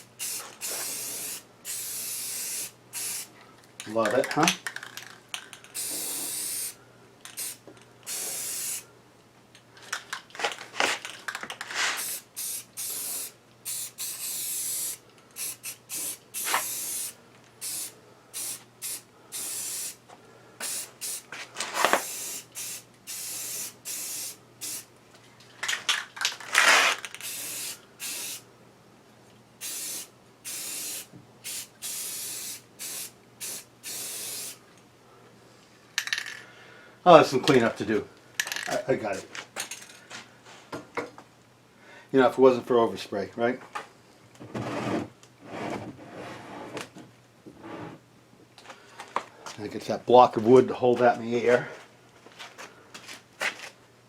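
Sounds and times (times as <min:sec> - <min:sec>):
spray paint hissing: 0:00.0 - 0:03.3, 0:05.8 - 0:06.8, 0:07.4 - 0:08.8, 0:11.8 - 0:20.0, 0:20.6 - 0:24.9, 0:26.7 - 0:28.4, 0:29.6 - 0:34.6.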